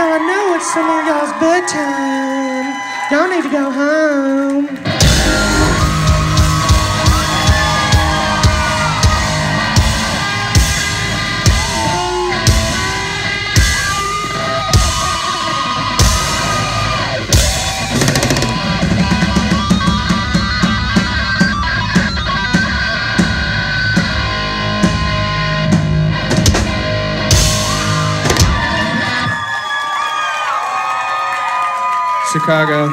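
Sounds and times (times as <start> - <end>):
rock band playing live: 4.6 - 29.4
electric guitar lead lines: 4.7 - 29.3
pounding drum kit: 4.8 - 29.3.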